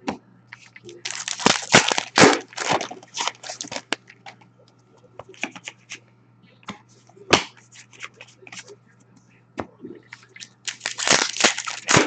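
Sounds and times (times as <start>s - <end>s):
foil wrappers crinkling: 0.5s - 4.3s, 10.1s - 12.0s.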